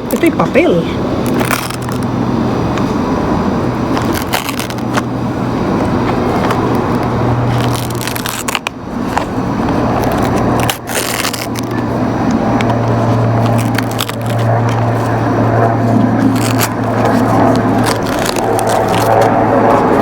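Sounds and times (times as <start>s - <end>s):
steady low hum: 0.0s - 20.0s
paper wrapping crinkling: 7.5s - 11.8s, 12.8s - 15.2s, 16.2s - 20.0s.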